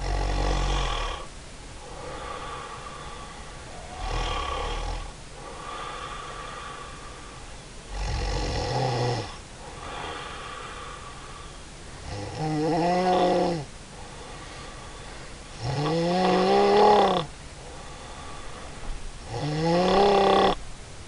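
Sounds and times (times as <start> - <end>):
woman snoring: 0.0 - 1.3, 2.0 - 7.0, 7.9 - 11.1, 12.0 - 14.2, 15.6 - 17.3, 19.2 - 20.6
soft breaths: 0.5 - 7.8, 9.3 - 12.1, 13.6 - 15.6, 16.4 - 19.2.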